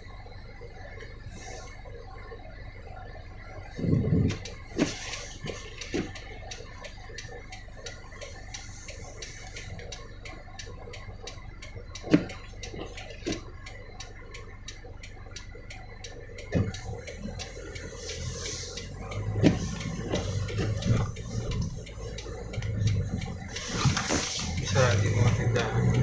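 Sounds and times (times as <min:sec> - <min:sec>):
rapid ticking: 0:03.6 - 0:26.0
knocks and thuds: 0:16.5 - 0:17.0.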